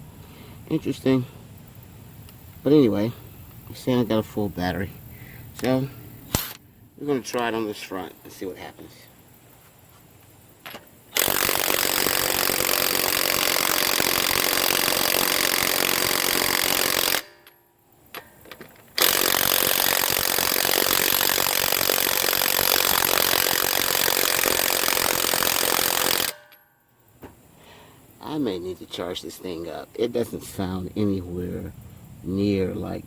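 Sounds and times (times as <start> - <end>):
impact wrench hammering: 10.7 - 26.7.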